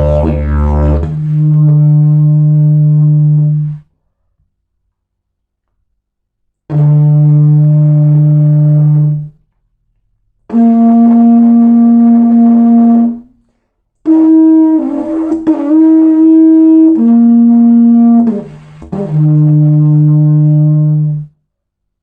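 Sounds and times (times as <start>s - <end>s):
didgeridoo held notes: 0.0s - 3.8s, 6.7s - 9.3s, 10.5s - 13.2s, 14.1s - 21.3s.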